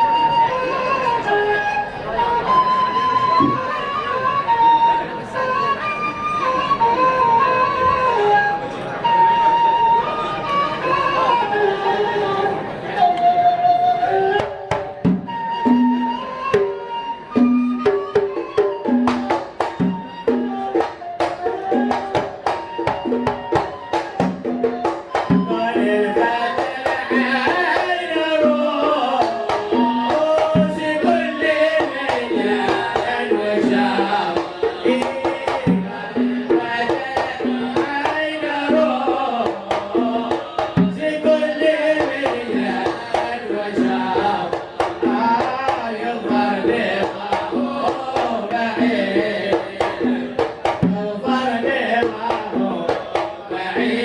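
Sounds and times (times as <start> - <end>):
hand drums beating: 14.2 - 54.0
person singing: 24.2 - 54.0.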